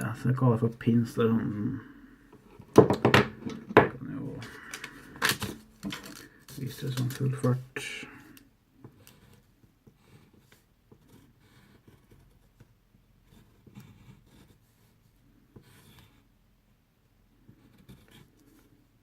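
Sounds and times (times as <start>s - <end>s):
pencil scratching on paper: 8.8s - 16.3s, 17.4s - 18.8s.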